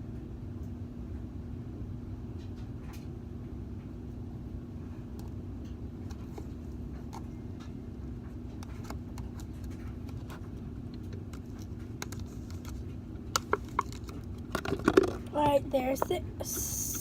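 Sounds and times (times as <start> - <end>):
low background hum: 0.0 - 17.0.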